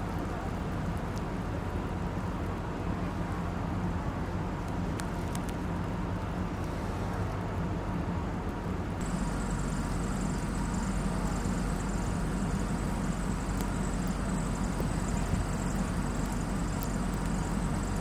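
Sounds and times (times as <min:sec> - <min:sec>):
city street rumble: 0:00.0 - 0:18.0.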